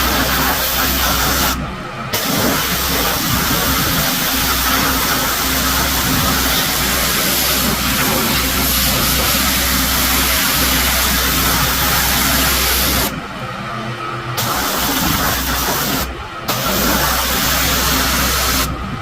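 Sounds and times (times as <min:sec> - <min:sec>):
pressure washer spray hissing: 0:00.0 - 0:13.1, 0:14.4 - 0:18.7
pressure washer engine humming: 0:00.0 - 0:19.0.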